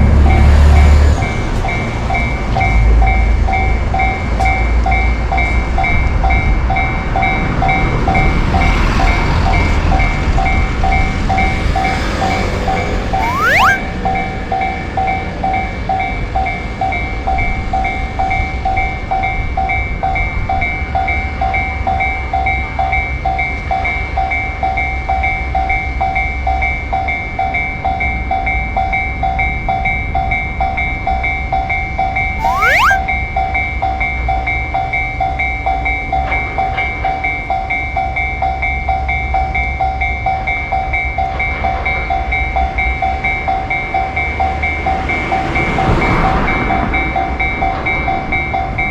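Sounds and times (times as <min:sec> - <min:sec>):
electric train rumbling: 0:00.0 - 0:13.2, 0:34.6 - 0:48.9
railroad crossing bell ringing: 0:00.2 - 0:48.9
short rising whistle: 0:13.2 - 0:13.9, 0:32.4 - 0:33.0.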